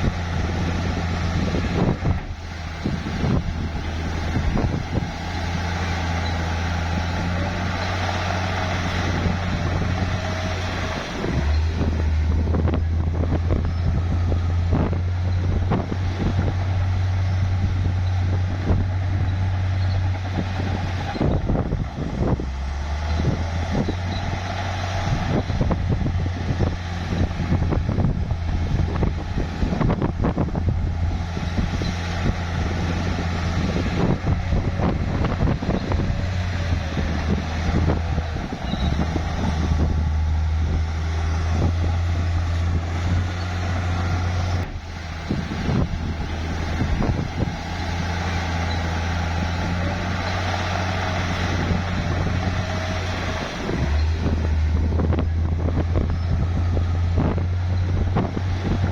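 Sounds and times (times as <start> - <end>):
bulldozer diesel engine running hard: 0.0 - 58.9.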